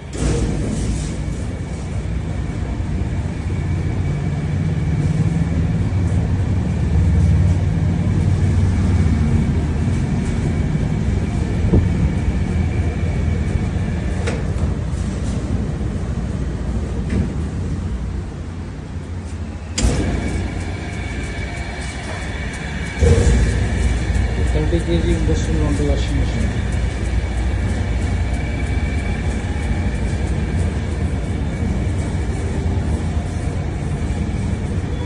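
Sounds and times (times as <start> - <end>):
thin steady whine: 0.0 - 35.0
washing machine drum humming: 19.6 - 35.0.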